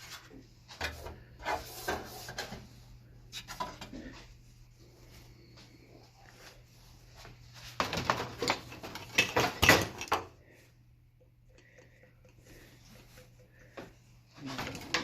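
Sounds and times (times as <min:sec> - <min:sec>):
low steady hum: 0:00.0 - 0:15.0
hard objects clattering and clinking: 0:07.8 - 0:10.5.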